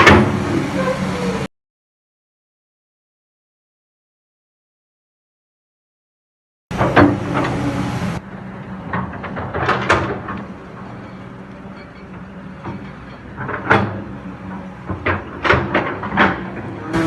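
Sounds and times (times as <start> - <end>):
excavator diesel engine running: 6.7 - 17.0.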